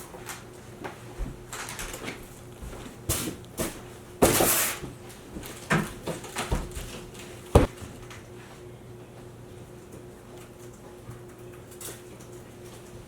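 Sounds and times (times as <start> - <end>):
knocks and bumps of handling: 5.3 - 8.0.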